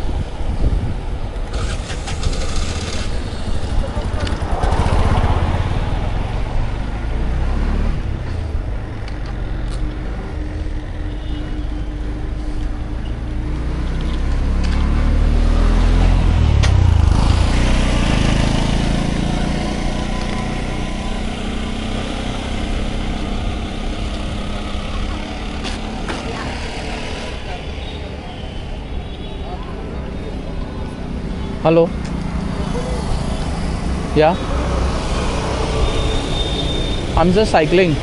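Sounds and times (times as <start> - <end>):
road traffic: 0.0 - 38.0
vehicle engine passing: 1.5 - 10.9, 11.6 - 28.9, 29.5 - 38.0.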